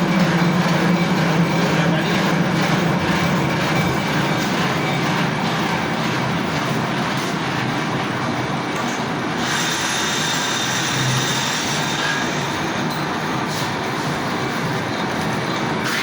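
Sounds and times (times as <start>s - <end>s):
lathe grinding: 9.4s - 16.0s.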